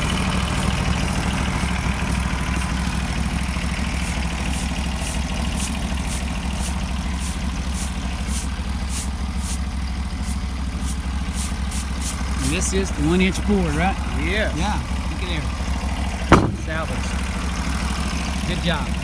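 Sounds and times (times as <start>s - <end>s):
gasoline engine running: 0.0s - 19.0s
short high hiss: 0.4s - 2.8s, 3.9s - 9.6s, 10.2s - 12.4s.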